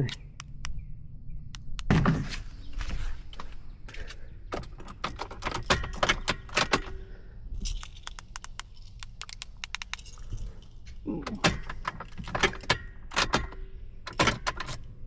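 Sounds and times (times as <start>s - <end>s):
metallic jingling: 4.6s - 13.7s
solenoid clicking: 8.0s - 10.0s.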